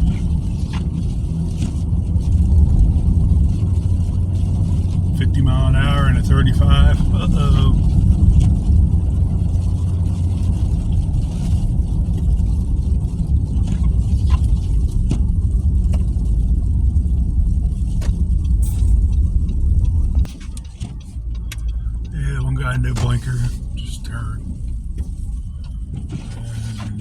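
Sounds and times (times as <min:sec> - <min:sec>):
car engine and tyre rumble: 0:00.0 - 0:27.0.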